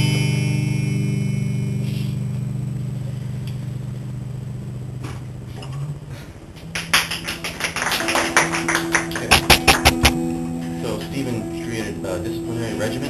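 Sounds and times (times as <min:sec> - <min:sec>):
acoustic guitar chord ringing: 0:00.0 - 0:04.8, 0:08.0 - 0:13.0
percussive guitar strumming: 0:06.9 - 0:13.0.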